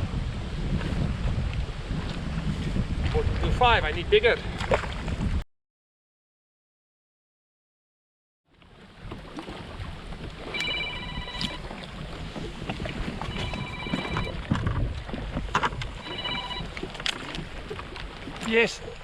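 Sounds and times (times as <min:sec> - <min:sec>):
water around a kayak: 0:00.0 - 0:05.4, 0:08.4 - 0:19.0
wind: 0:00.0 - 0:05.4, 0:08.4 - 0:19.0.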